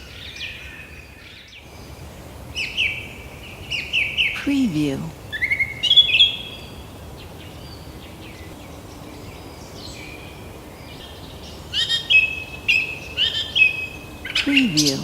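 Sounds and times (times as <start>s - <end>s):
forest birds chirping: 0.0s - 15.0s.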